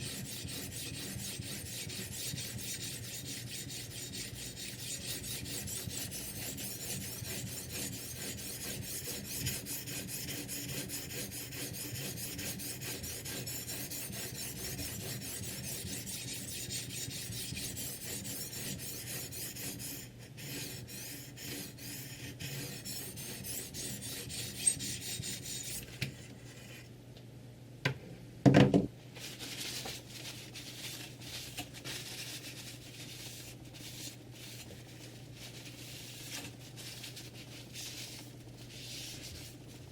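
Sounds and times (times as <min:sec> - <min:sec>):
sharpening stone scraping knife: 0:00.0 - 0:25.8.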